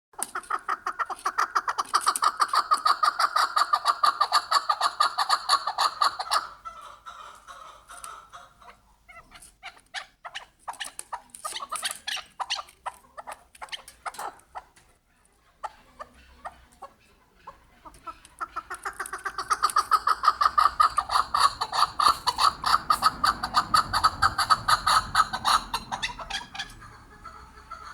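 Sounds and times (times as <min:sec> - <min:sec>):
partridge calling: 0:15.7 - 0:27.9.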